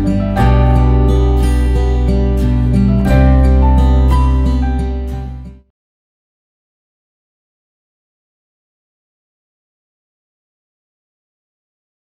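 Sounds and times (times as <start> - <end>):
plucked guitar music with bass: 0.0 - 5.7.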